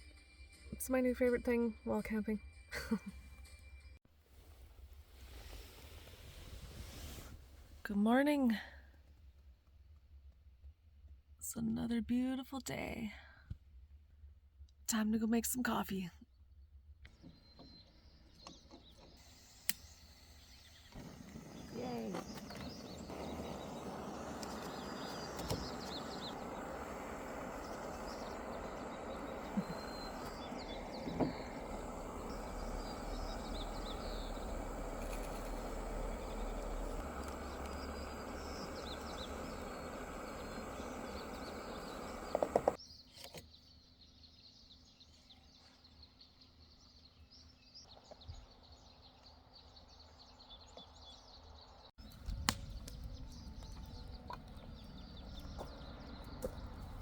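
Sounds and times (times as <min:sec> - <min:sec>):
small birds chirping: 0:17.1 - 0:57.0.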